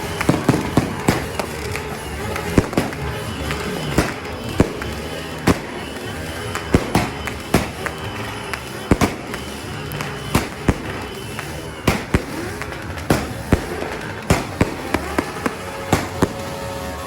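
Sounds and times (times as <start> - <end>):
fireworks bangs: 0.0 - 17.0.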